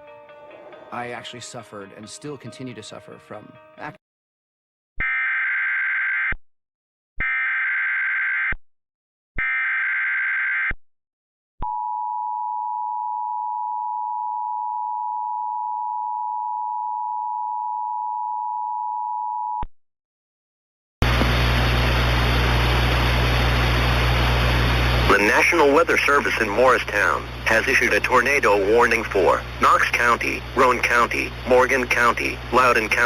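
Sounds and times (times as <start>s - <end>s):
digital header data bursts: 25.1s - 33.0s.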